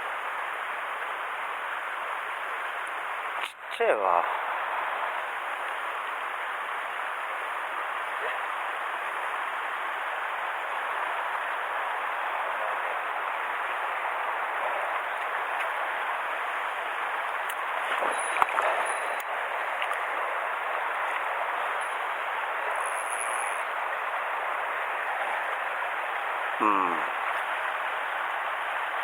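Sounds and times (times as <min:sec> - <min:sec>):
stream water rushing: 0:00.0 - 0:29.0.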